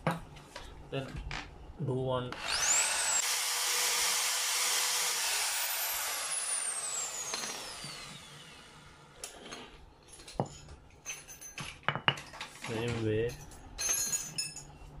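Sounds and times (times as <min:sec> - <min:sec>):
power tool whirring and spinning down: 0:02.3 - 0:09.2.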